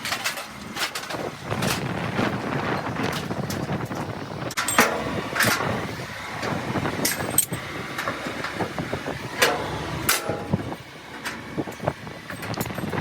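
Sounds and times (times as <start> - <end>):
steady background rumble: 0.0 - 13.0
sharp knocks and clanks: 3.0 - 5.7, 9.4 - 11.4.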